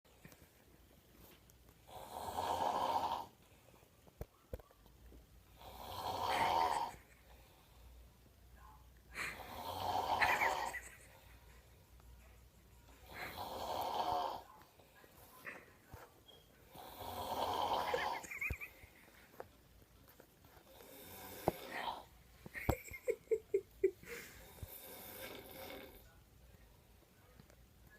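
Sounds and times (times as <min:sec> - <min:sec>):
quiet breathing: 0:00.1 - 0:04.4, 0:05.4 - 0:22.6, 0:23.9 - 0:27.9
person snoring loudly: 0:01.9 - 0:03.3, 0:05.6 - 0:07.0, 0:09.3 - 0:10.8, 0:13.1 - 0:14.4, 0:16.7 - 0:18.3, 0:24.6 - 0:26.0.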